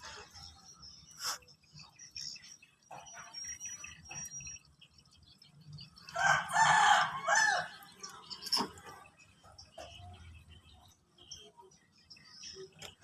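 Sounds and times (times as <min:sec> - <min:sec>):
rooster crowing: 0:06.2 - 0:07.9.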